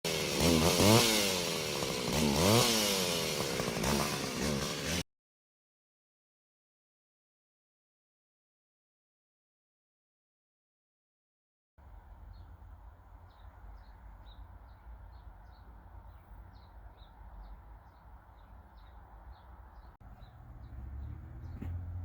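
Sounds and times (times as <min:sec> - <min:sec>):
small bird chirping: 0:11.9 - 0:21.9.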